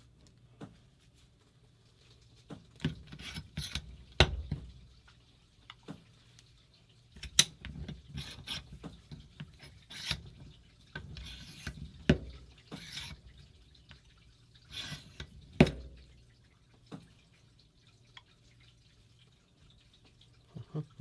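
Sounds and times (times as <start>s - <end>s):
tools scraping and rubbing: 2.9s - 4.0s, 7.2s - 13.5s, 14.6s - 15.4s.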